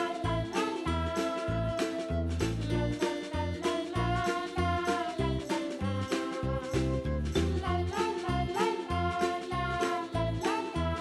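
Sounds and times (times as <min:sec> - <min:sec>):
upbeat children's music: 0:00.0 - 0:11.0.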